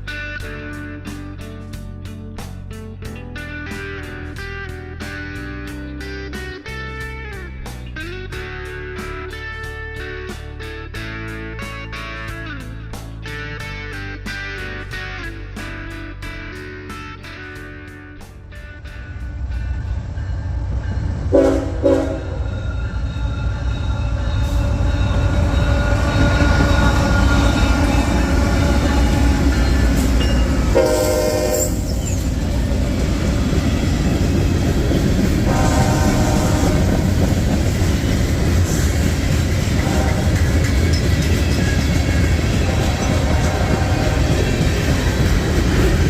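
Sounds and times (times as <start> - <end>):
diesel freight train rumbling: 14.4 - 46.0
locomotive horn blasts: 21.3 - 32.0, 35.5 - 37.3, 39.8 - 40.6, 42.4 - 44.6.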